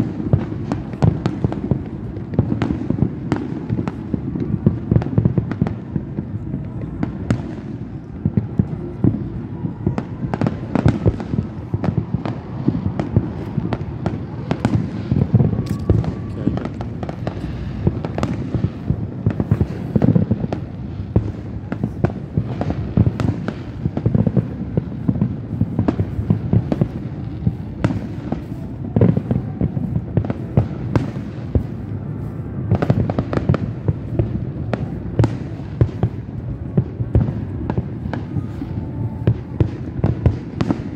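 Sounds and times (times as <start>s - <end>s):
fireworks bangs and crackles: 0.0s - 40.9s.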